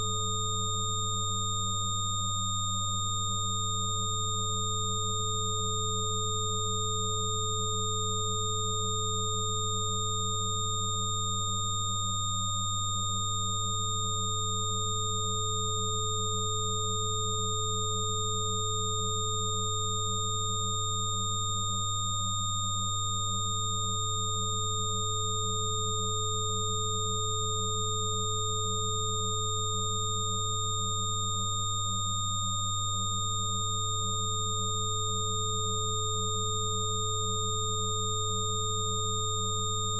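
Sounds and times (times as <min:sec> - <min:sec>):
steady pure sine tones: 0:00.0 - 0:39.9.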